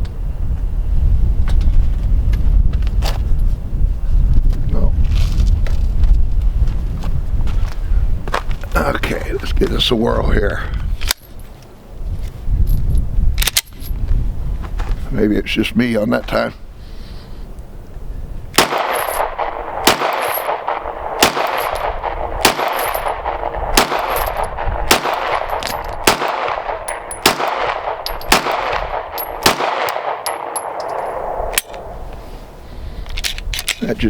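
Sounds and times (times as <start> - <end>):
pistol shots with echo: 18.6 - 32.0.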